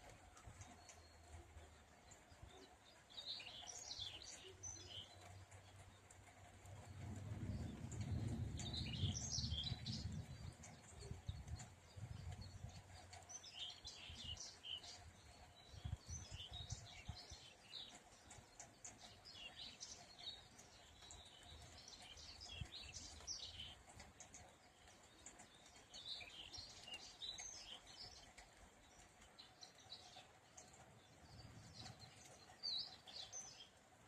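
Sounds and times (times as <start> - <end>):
small songbirds chirping: 0.0 - 34.0
soft low rumble: 6.6 - 13.2.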